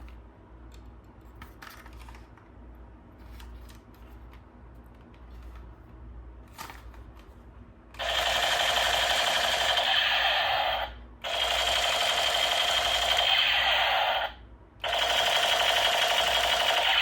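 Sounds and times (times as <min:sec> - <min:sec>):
toy machine-gun sound effect: 0:08.0 - 0:17.0.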